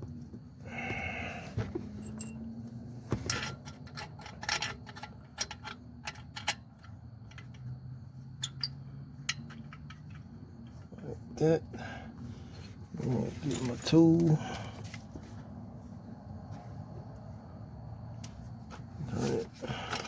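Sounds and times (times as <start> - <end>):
metallic bolt clicks and clinks: 2.0 - 2.5, 3.2 - 7.7, 8.4 - 10.9.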